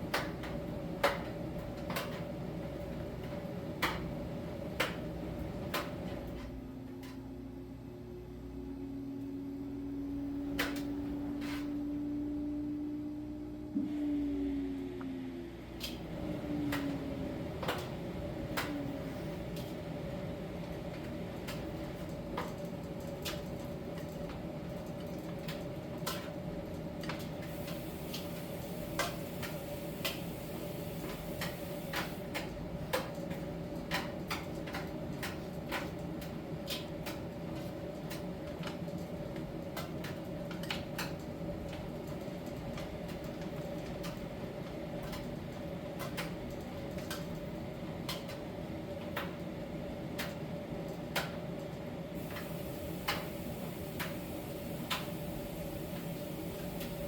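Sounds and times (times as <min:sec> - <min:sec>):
laundry clicking in drum: 0:00.0 - 0:06.6, 0:15.9 - 0:54.2
tumble dryer humming: 0:00.0 - 0:57.0.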